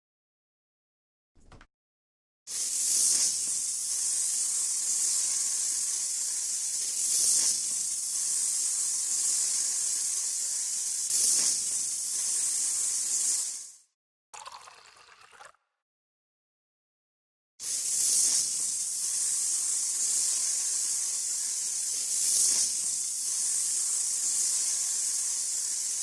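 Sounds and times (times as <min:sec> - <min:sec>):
high-pitched air jet hiss: 0:02.5 - 0:13.9, 0:17.6 - 0:26.0.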